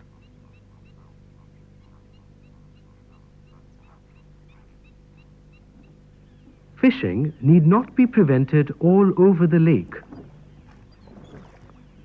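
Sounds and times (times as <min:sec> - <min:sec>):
soft low bird calls: 0:00.0 - 0:12.0
steady low hum: 0:00.0 - 0:12.0.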